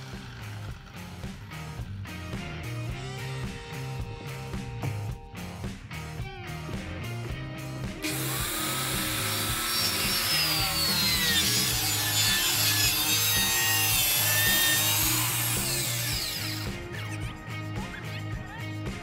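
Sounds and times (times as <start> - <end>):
power saw ripping wood: 0.0 - 1.5, 8.0 - 16.7
background music: 0.0 - 19.0.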